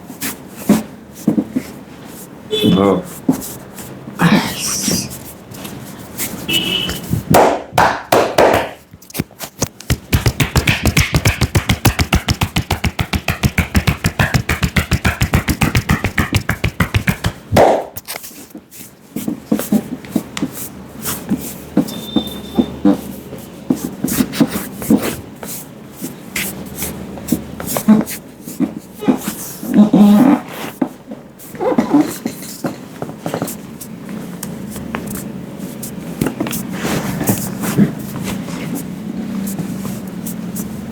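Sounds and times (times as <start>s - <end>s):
hands tapping and slapping head: 6.9s - 18.1s.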